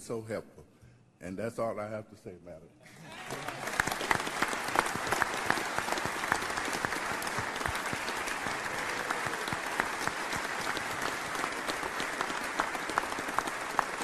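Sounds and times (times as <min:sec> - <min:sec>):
large audience applauding: 0:03.0 - 0:14.0.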